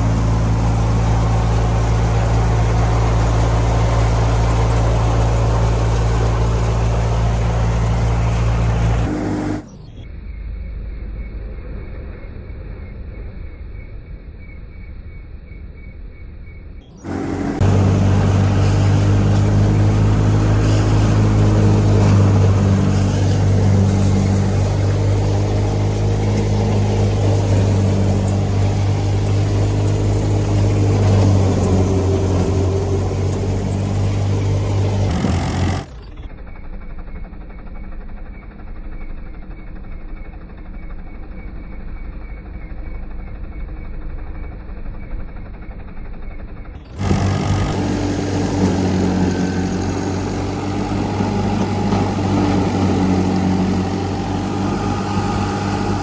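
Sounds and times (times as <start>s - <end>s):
combine harvester engine hum: 0.0s - 10.0s, 16.9s - 36.3s, 46.6s - 56.0s.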